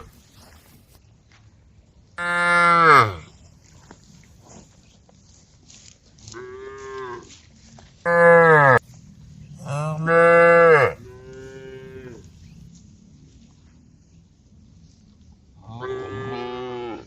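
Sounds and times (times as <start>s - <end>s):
cows mooing: 2.2s - 3.3s, 8.1s - 8.8s, 9.6s - 12.3s, 15.7s - 17.0s.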